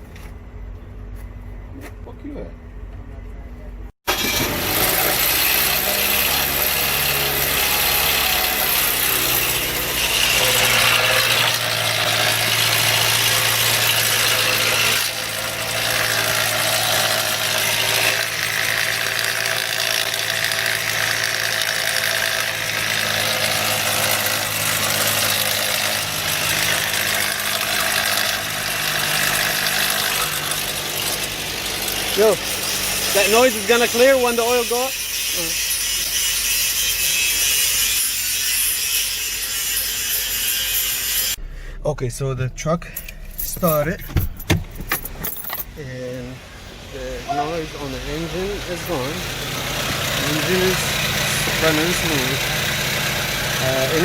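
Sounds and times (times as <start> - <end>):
car engine running: 41.4 - 52.6
mechanical engine noise: 41.4 - 54.0.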